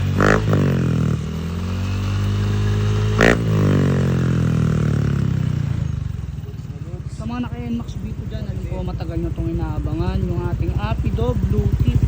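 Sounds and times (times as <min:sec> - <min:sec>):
scooter engine revving: 0:00.0 - 0:12.0.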